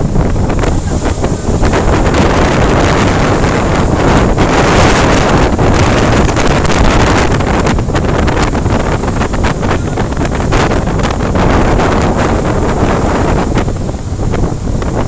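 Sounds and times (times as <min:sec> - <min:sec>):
engine and water roar: 0:00.0 - 0:15.0
wind buffeting microphone: 0:00.0 - 0:15.0.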